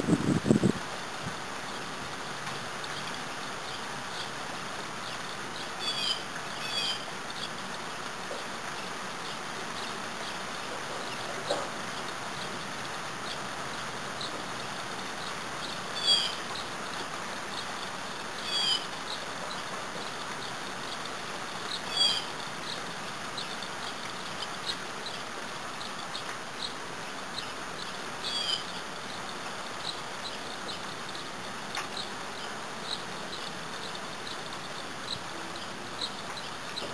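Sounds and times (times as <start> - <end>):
light rain falling: 0.0 - 36.9
bird calling: 5.8 - 7.0, 18.4 - 18.9, 21.8 - 22.3, 28.2 - 28.7.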